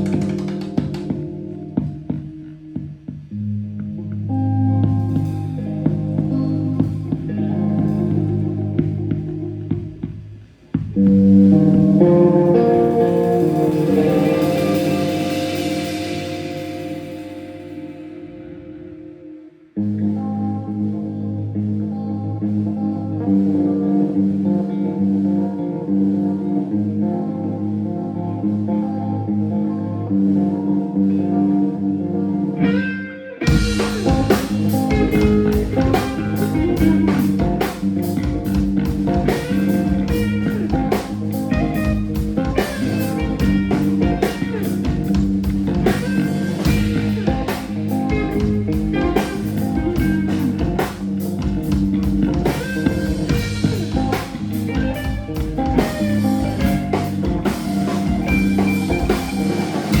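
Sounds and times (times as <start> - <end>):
rock band with drums: 0.0 - 19.4, 32.5 - 60.0
held guitar passage: 0.0 - 60.0.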